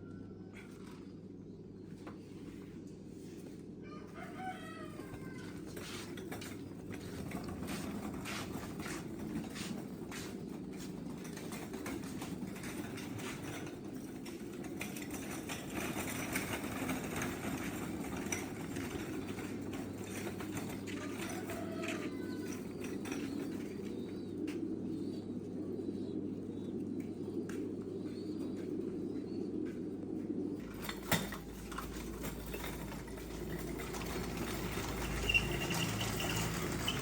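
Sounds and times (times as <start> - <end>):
rooster crowing: 3.8 - 6.1, 20.9 - 22.8
birds clicking: 4.3 - 37.0
steady low background noise: 22.7 - 35.2.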